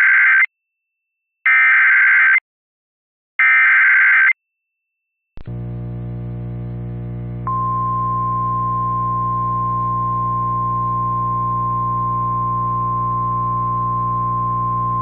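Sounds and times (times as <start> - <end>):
low buzzing drone: 5.5 - 15.0.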